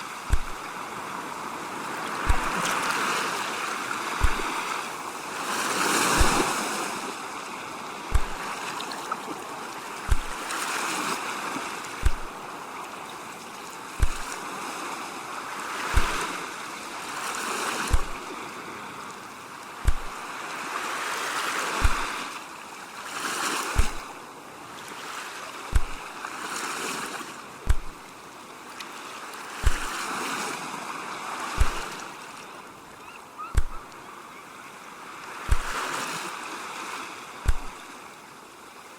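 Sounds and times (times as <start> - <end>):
ocean waves washing in: 0.0 - 38.9
soft low thump: 0.3 - 0.6, 2.2 - 2.6, 4.2 - 4.6, 6.2 - 6.4, 8.1 - 8.4, 10.1 - 10.4, 12.0 - 12.4, 14.0 - 14.3, 16.0 - 16.2, 17.9 - 18.2, 19.8 - 20.2, 21.8 - 22.1, 23.8 - 24.1, 25.7 - 26.0, 27.7 - 28.1, 29.6 - 29.9, 31.6 - 31.9, 33.5 - 33.9, 35.5 - 35.8, 37.4 - 37.8.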